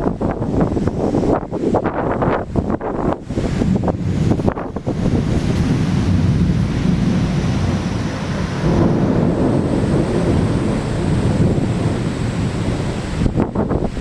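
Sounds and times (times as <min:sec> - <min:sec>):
heavy rain: 0:00.0 - 0:14.0
wind buffeting microphone: 0:00.0 - 0:14.0.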